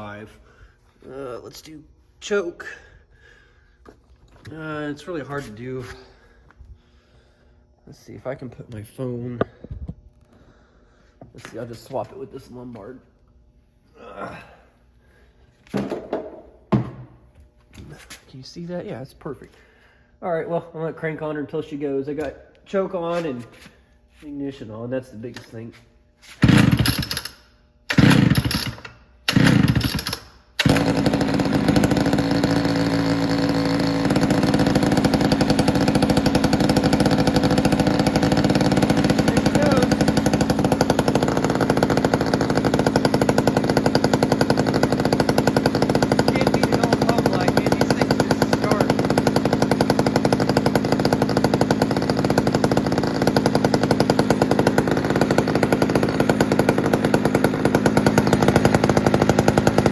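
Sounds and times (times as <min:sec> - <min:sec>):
chainsaw being pull-started: 0:26.2 - 0:59.9
chainsaw running steadily: 0:26.4 - 0:59.9.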